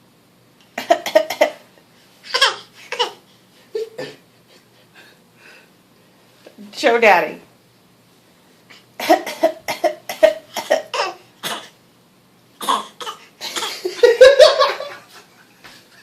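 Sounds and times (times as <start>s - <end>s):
girl fake coughing: 9.0s - 11.8s.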